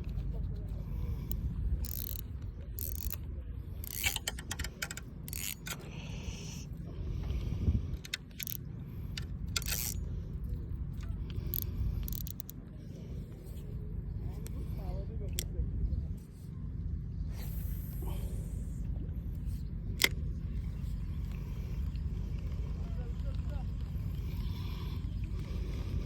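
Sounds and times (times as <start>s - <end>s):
fishing reel mechanical bursts: 1.3s - 3.2s, 3.8s - 6.6s, 8.0s - 10.1s, 11.3s - 12.5s.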